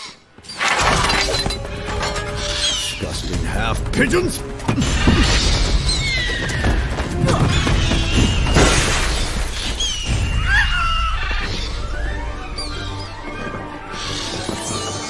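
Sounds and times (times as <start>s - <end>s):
crashing impacts: 0.7s - 11.6s
action film music: 0.8s - 15.0s.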